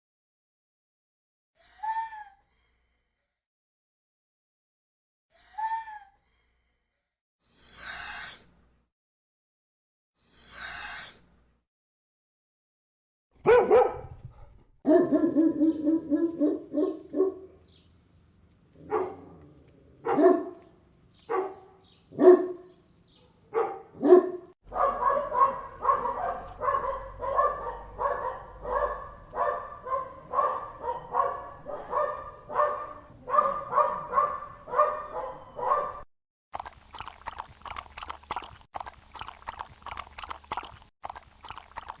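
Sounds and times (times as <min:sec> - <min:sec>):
dog barking: 0:13.4 - 0:17.6, 0:18.8 - 0:19.4, 0:20.0 - 0:20.7, 0:21.3 - 0:36.1.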